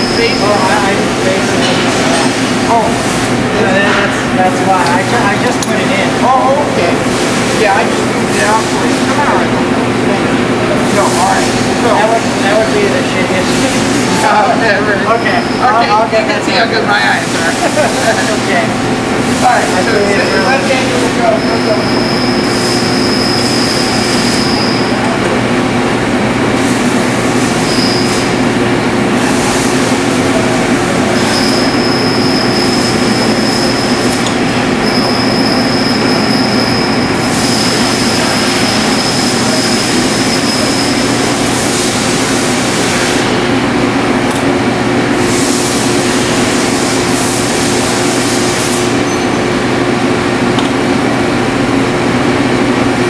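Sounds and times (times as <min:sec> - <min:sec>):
metal lathe humming: 0:00.0 - 0:53.0
high thin cutting squeal: 0:19.6 - 0:25.0, 0:27.4 - 0:28.4, 0:31.1 - 0:43.3.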